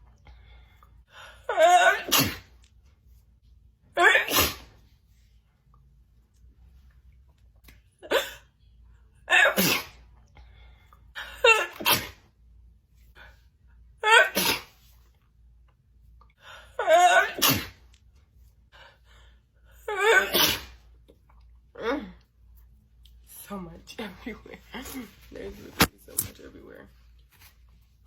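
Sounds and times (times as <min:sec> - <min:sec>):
woman sneezing: 0:01.5 - 0:02.5, 0:04.0 - 0:04.7, 0:09.3 - 0:10.0, 0:11.4 - 0:12.2, 0:14.0 - 0:14.8, 0:16.8 - 0:17.8, 0:19.9 - 0:20.8.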